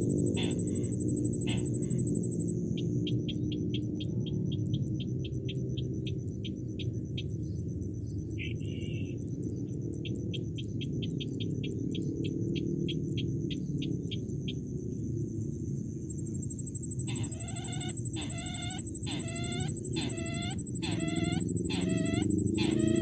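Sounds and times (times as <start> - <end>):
quick ticking bird notes: 0.0 - 7.4, 16.1 - 23.0
loud clucking bird call: 0.4 - 2.0, 17.0 - 23.0
thin high whine: 16.2 - 23.0.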